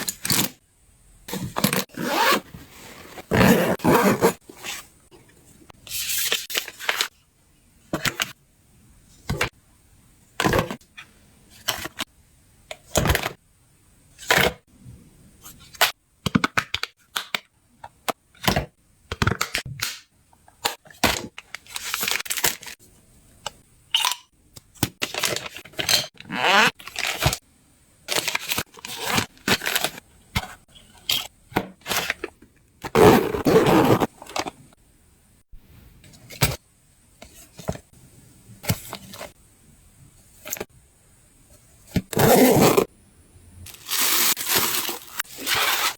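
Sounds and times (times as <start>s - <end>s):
packing rustles and clicks: 28.1s - 34.5s, 43.7s - 45.9s.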